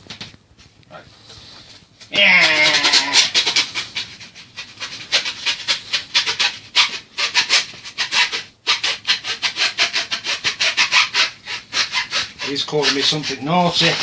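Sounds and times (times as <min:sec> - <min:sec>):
blade sawing through cardboard: 0:02.7 - 0:14.0.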